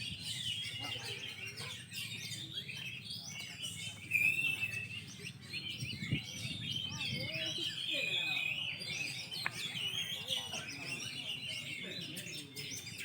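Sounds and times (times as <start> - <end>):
birds singing rapid chirps: 0.0 - 13.0
high bird whistle: 4.1 - 5.0.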